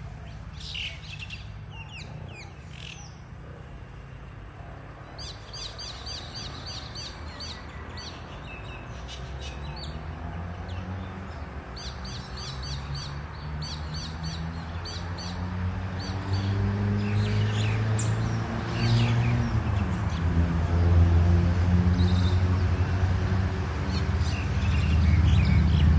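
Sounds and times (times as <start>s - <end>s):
birds chirping: 0.0s - 3.4s, 5.1s - 21.0s.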